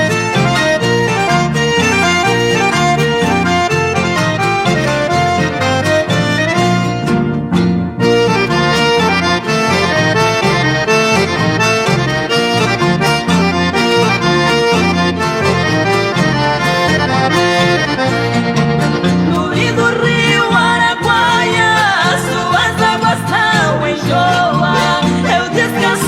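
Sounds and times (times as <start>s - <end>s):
instrumental music with reed melody: 0.0s - 26.0s
person singing: 19.2s - 26.0s.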